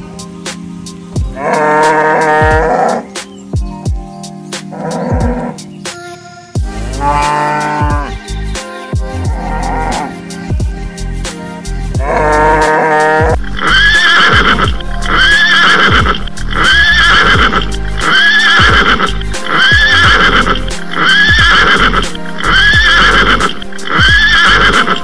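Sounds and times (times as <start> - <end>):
music: 0.0 - 25.0
horse neighing: 1.4 - 3.0, 4.7 - 5.6, 12.0 - 25.0.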